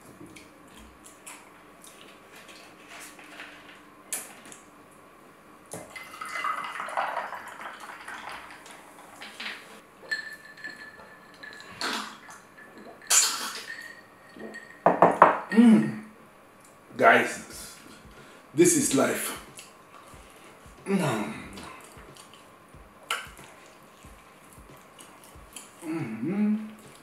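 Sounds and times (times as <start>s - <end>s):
food being chewed: 0.2s - 4.7s, 19.4s - 20.9s, 21.5s - 25.8s.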